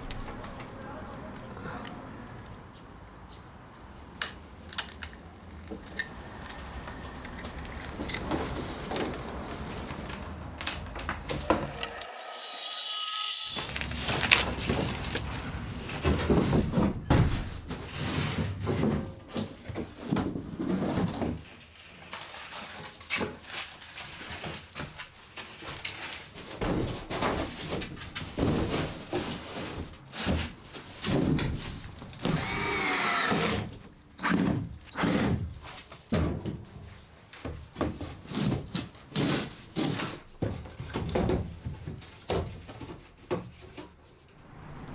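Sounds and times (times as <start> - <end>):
power tool whining: 11.1 - 15.2, 32.2 - 33.8.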